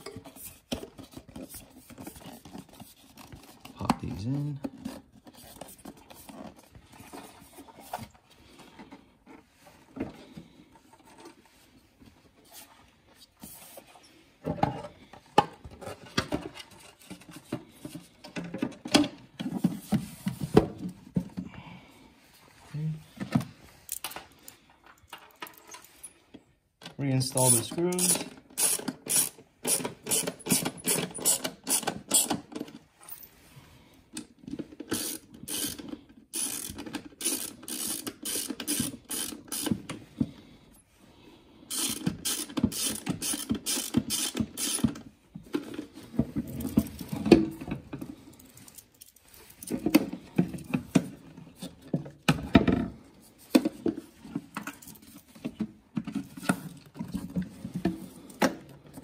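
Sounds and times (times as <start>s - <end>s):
hand ratchet clicking: 27.5s - 32.4s, 34.9s - 39.8s, 41.7s - 44.9s.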